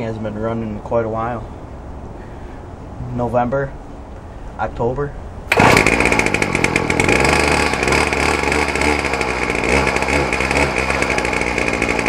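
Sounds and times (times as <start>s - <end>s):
string trimmer engine revving: 5.5s - 12.0s.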